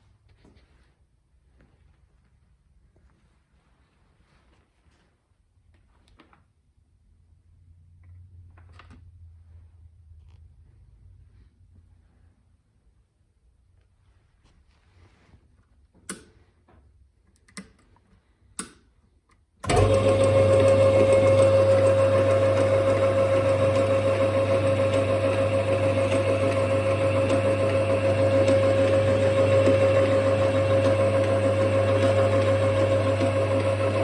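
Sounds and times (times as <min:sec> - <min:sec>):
lathe motor humming: 0:19.7 - 0:34.0.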